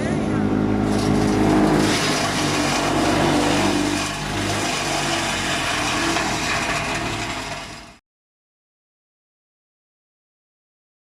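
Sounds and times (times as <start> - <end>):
engine running: 0.0 - 8.0.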